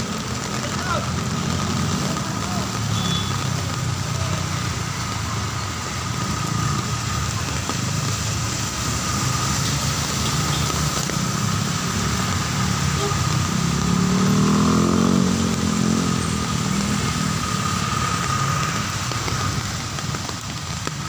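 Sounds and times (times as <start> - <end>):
heavy rain: 0.0 - 21.0
vehicle engine passing: 3.4 - 20.9.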